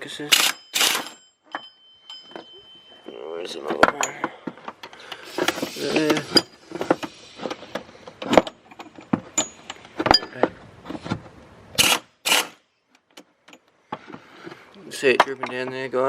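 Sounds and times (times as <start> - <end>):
metal tools clinking: 0.0 - 7.2, 8.2 - 10.5
short scraping bursts: 5.1 - 8.0, 11.8 - 12.6.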